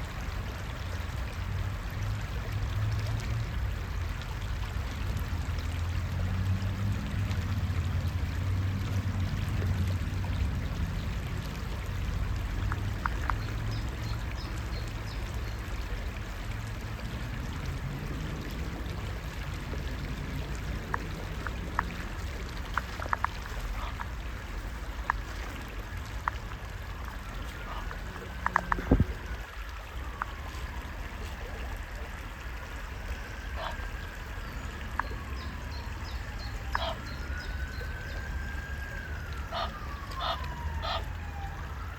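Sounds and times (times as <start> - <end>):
creek water trickling: 0.0 - 41.9
small ticks and splashes: 0.0 - 41.9.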